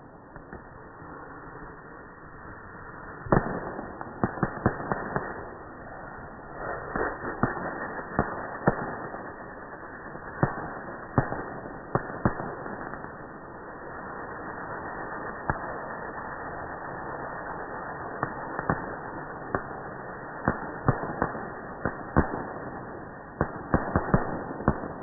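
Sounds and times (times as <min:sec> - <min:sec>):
fireworks bangs: 0:00.0 - 0:13.9, 0:18.0 - 0:25.0
fireworks crackle: 0:00.0 - 0:25.0.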